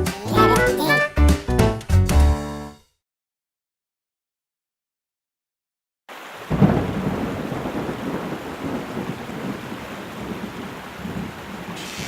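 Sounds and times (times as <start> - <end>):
heavy rain: 6.1 - 12.0
thunder rumbling: 6.5 - 11.8.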